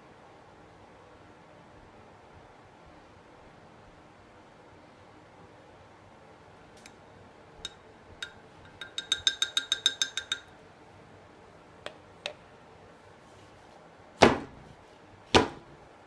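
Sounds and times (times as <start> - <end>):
ringing clinks: 7.7 - 10.5.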